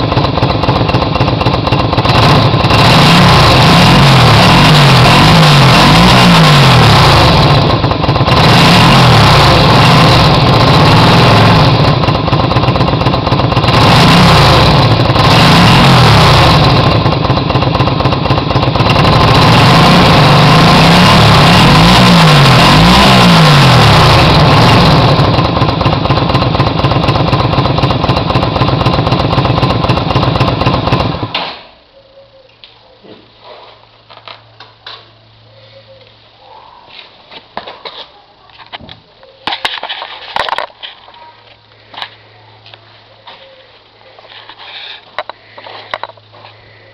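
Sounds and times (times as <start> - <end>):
motorcycle engine revving: 0.0 - 31.6, 44.0 - 46.9.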